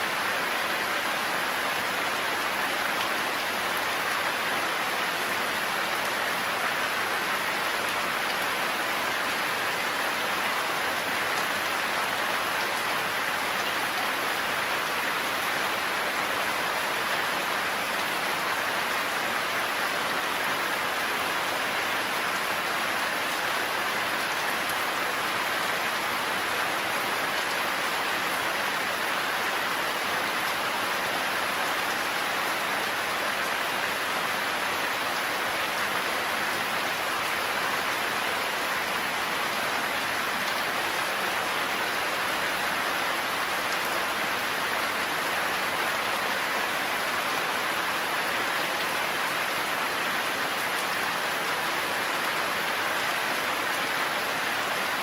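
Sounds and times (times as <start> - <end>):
heavy rain in a forest: 0.0 - 55.0.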